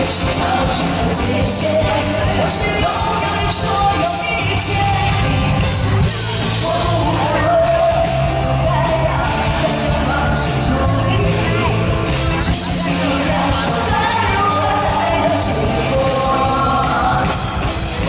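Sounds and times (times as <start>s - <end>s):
rock band playing ballad: 0.0s - 18.0s.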